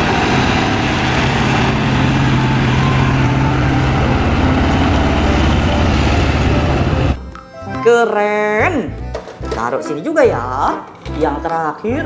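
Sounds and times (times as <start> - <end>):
truck engine droning: 0.0 - 7.9.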